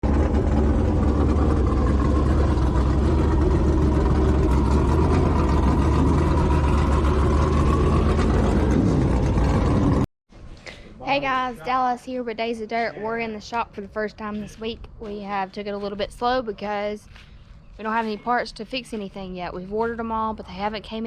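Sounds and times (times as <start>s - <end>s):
engine droning steadily: 0.0s - 10.1s.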